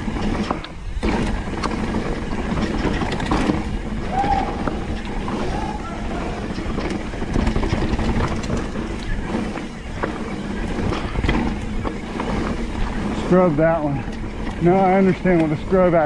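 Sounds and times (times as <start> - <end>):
bike clicks and clatters: 0.0 - 16.0
tyres rumbling over dirt: 0.0 - 16.0
wind buffeting microphone: 0.0 - 16.0.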